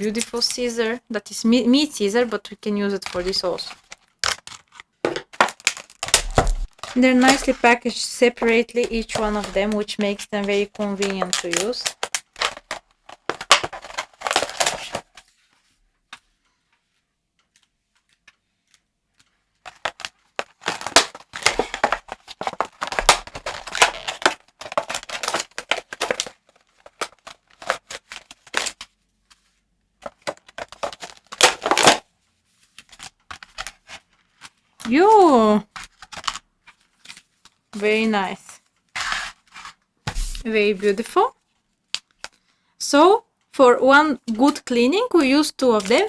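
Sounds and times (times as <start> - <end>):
wrapper crinkling: 2.0 - 15.2, 19.7 - 28.8, 30.1 - 32.0
scissors snipping wrapper: 2.9 - 15.1, 19.7 - 28.8, 30.0 - 32.0.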